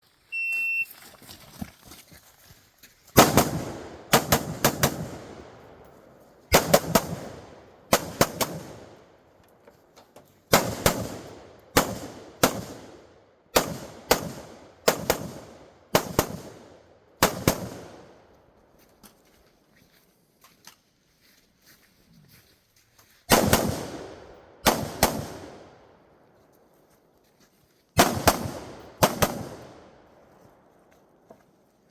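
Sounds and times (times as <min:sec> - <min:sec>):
rifle shots with echo: 0:03.2 - 0:05.9, 0:06.5 - 0:09.1, 0:10.5 - 0:18.2, 0:23.3 - 0:25.9, 0:28.0 - 0:30.1.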